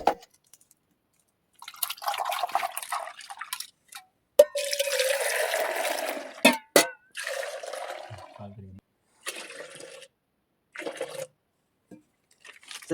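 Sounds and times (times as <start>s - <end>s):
milk squirting into a container: 1.6s - 4.0s, 9.2s - 11.4s, 12.2s - 12.9s.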